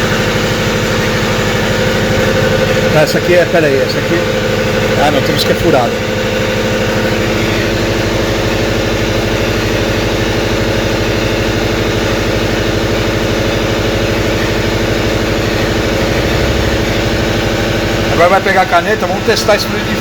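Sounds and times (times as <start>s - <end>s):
motor droning with fast pulse: 14.1s - 19.4s.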